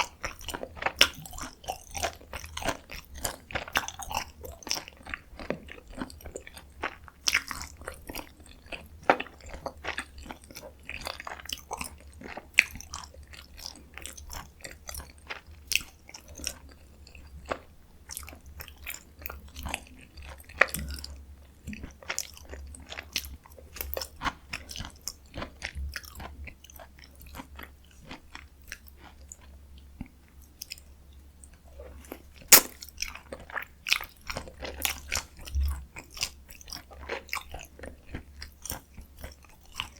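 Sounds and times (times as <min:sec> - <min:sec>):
close chewing with mouth clicks: 0:00.0 - 0:39.9
loud crack: 0:32.5 - 0:32.8
sharp crunch: 0:32.5 - 0:32.8.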